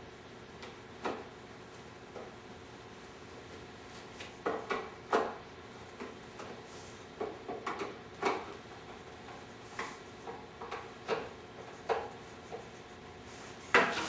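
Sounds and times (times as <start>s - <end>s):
wooden furniture panels clicking and knocking: 4.2s - 5.4s, 7.2s - 12.7s.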